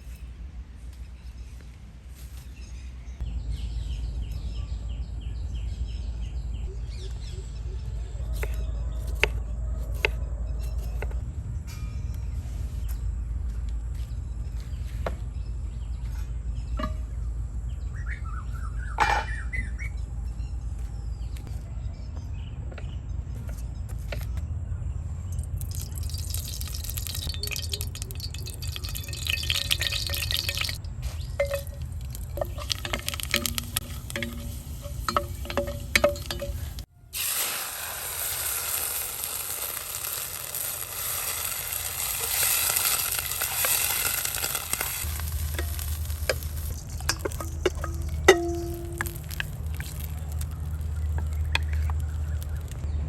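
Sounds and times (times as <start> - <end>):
food frying in hot oil: 25.4 - 52.8
spoon scraping a pot: 26.1 - 36.9.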